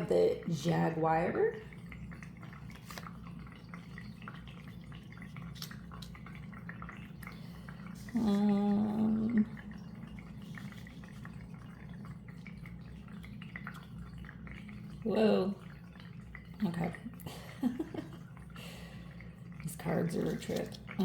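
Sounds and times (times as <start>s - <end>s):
person humming: 8.2s - 9.4s.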